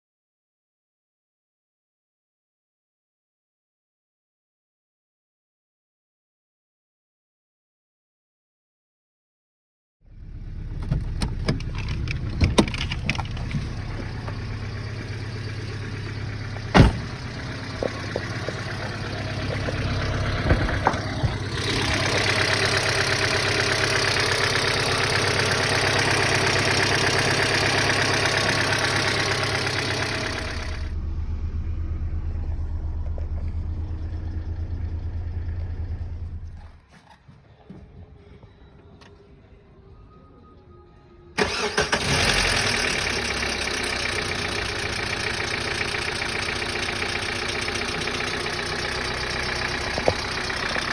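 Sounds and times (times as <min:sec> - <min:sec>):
car engine humming: 0:10.1 - 0:36.7, 0:41.4 - 0:50.9.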